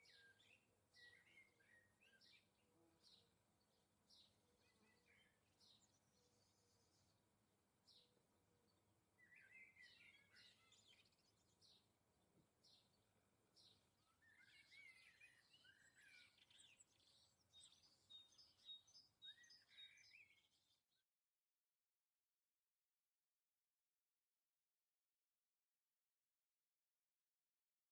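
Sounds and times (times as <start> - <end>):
small birds chirping and twittering: 0.0 - 21.0.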